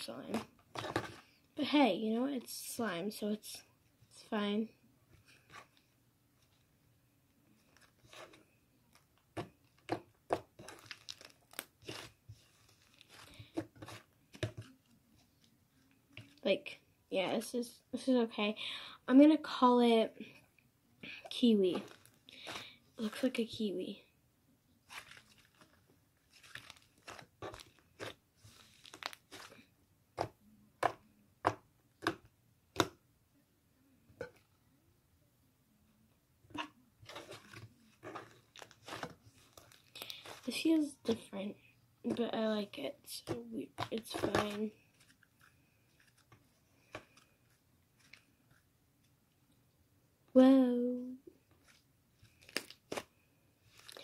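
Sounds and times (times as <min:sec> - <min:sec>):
slime squishing and crackling: 0:09.8 - 0:14.8, 0:21.3 - 0:23.4, 0:24.9 - 0:32.2, 0:36.5 - 0:41.4, 0:42.1 - 0:48.2, 0:51.6 - 0:54.0
slime being squished by hand: 0:52.3 - 0:54.0.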